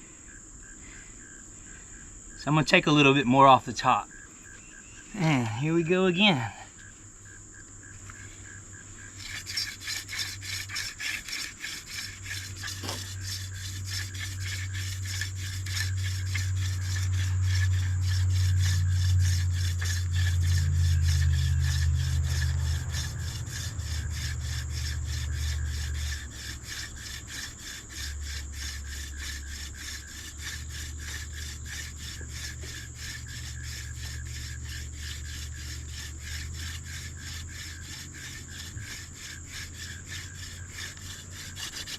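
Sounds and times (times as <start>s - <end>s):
crickets chirring: 0.0s - 41.9s
wooden spindle grinding on fireboard: 9.1s - 41.9s.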